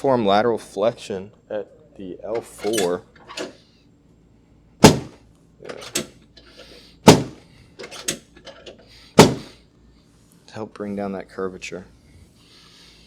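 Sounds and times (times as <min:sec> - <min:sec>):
table section snapping down: 0:04.8 - 0:06.1, 0:07.1 - 0:08.3, 0:09.2 - 0:09.5.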